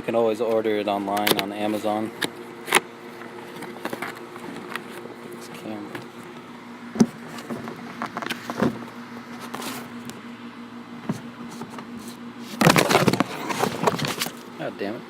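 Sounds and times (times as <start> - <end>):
steady low hum: 0.0 - 15.0
packaging clicks and rustles: 12.5 - 14.5.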